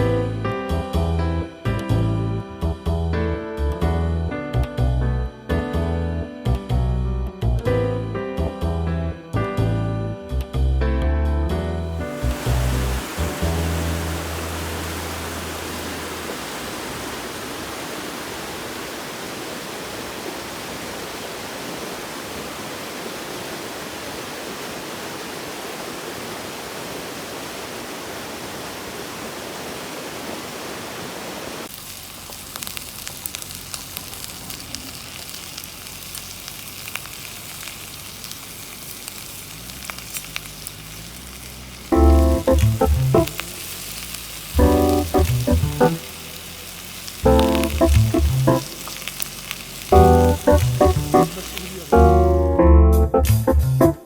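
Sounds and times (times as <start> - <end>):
food sizzling in a pan: 11.9 - 18.7, 31.6 - 52.6
running water rushing: 11.9 - 52.6.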